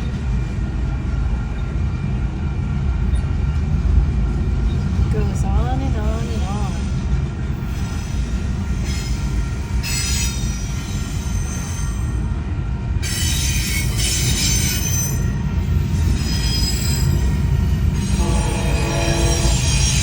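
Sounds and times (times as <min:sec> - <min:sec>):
train wheels rumbling on rail: 0:00.0 - 0:20.0
high-pitched wheel squeal: 0:13.1 - 0:17.4.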